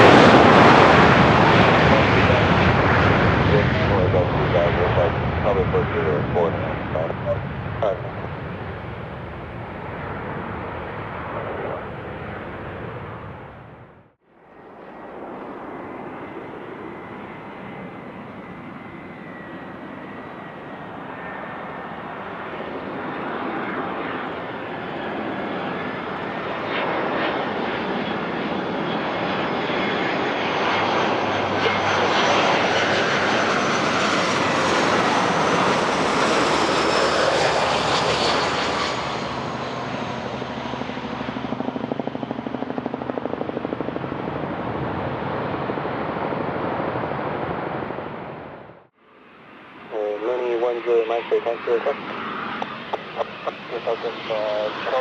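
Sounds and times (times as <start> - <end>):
jet engines with high fan whine: 0.0 - 55.0.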